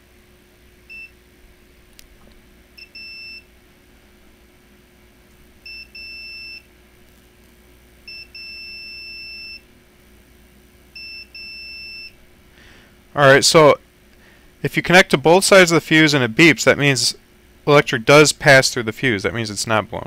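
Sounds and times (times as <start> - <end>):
multimeter chirp and high beep: 0.9 - 1.2, 2.8 - 3.5, 5.6 - 6.7, 8.0 - 9.7, 10.9 - 12.2.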